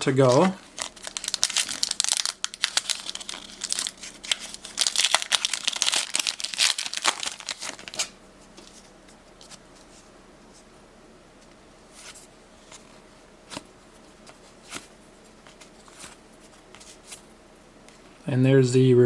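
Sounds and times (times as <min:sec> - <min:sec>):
foil wrapper crinkling and tearing: 0:00.1 - 0:08.2.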